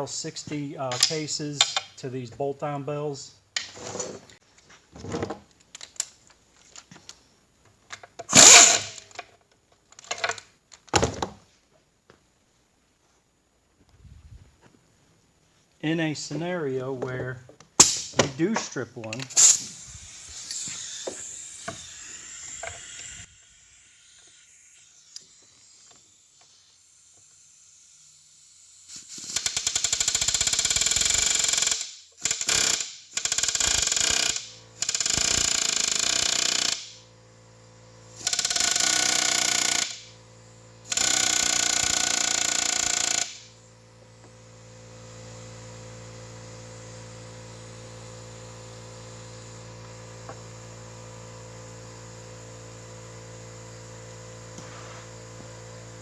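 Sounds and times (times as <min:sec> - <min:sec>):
impact wrench hammering: 0:08.3 - 0:09.1, 0:17.8 - 0:23.3, 0:28.9 - 0:37.0, 0:38.2 - 0:40.2, 0:40.8 - 0:43.6.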